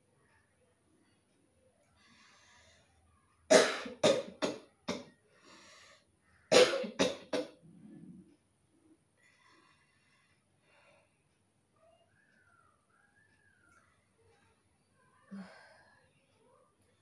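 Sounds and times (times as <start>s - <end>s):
person coughing: 3.5s - 5.0s, 6.5s - 7.5s.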